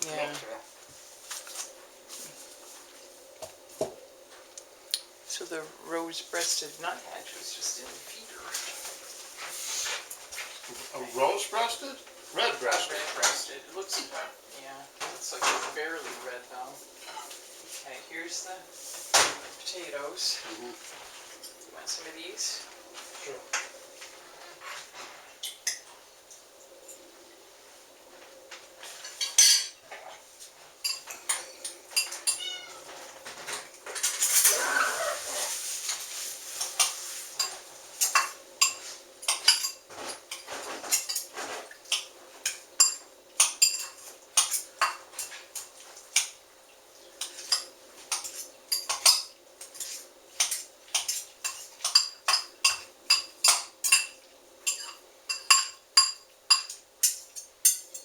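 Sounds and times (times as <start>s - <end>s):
cutlery clinking on plates: 28.8s - 30.2s, 30.8s - 34.6s, 36.6s - 46.4s, 47.2s - 58.0s.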